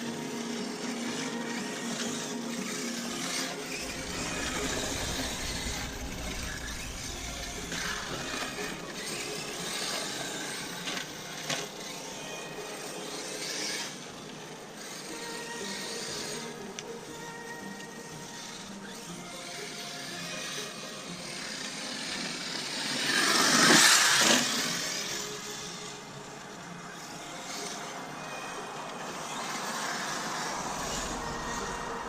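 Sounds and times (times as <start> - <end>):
electric motor whine: 0.0 - 32.0
heavy rumble: 3.8 - 9.7, 30.7 - 32.0.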